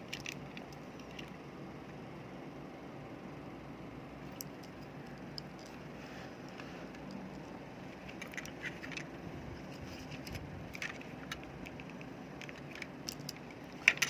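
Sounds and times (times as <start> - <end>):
small hard parts clicking: 0.0 - 1.4, 4.2 - 14.0
low background hum: 0.0 - 14.0.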